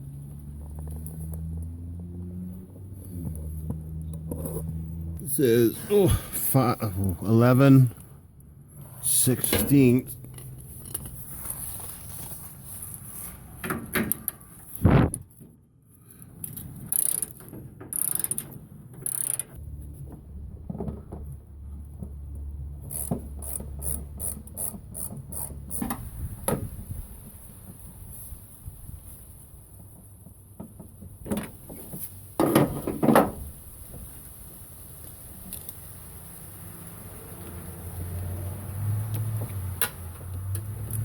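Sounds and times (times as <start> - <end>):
ratchet clicks: 16.4 - 19.6, 22.8 - 26.0.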